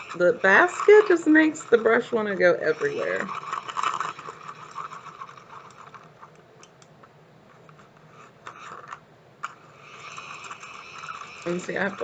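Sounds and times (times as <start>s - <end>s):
brush scratching and rubbing: 0.0s - 6.0s, 9.8s - 12.0s
toy washing machine hum: 0.0s - 6.8s, 7.8s - 12.0s.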